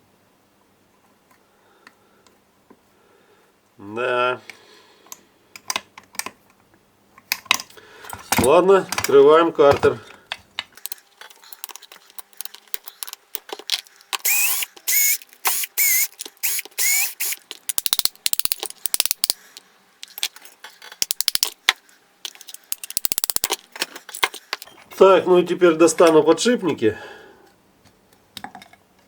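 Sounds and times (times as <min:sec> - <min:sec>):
ratchet driver clicking: 0:14.2 - 0:19.4, 0:21.0 - 0:21.6, 0:22.7 - 0:23.6.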